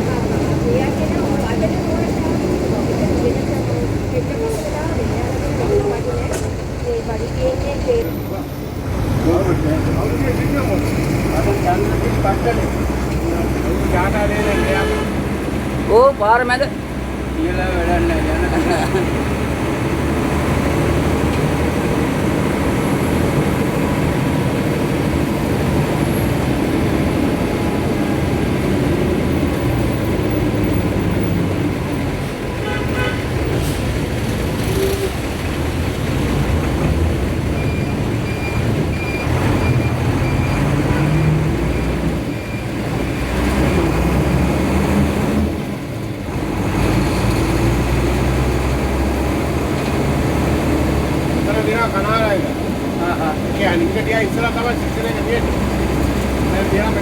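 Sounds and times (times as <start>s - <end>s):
road traffic noise: 0.0s - 57.0s
vehicle engine: 0.0s - 57.0s
car horn toot: 14.2s - 15.3s, 32.5s - 33.4s.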